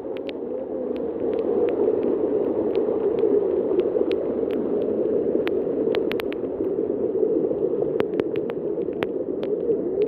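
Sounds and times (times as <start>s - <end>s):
raindrops ticking: 0.0s - 6.8s, 7.9s - 10.0s
rush of falling water: 0.0s - 10.0s.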